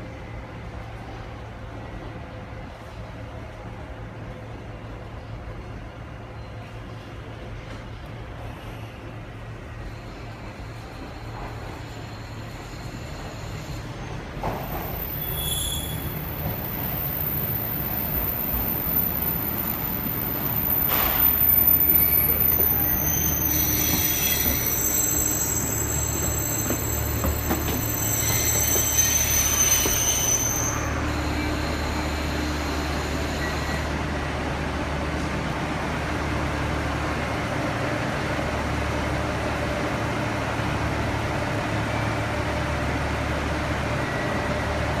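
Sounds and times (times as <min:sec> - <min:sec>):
train rumbling: 0:00.0 - 0:45.0
train wheels squealing: 0:08.3 - 0:34.5, 0:43.8 - 0:45.0.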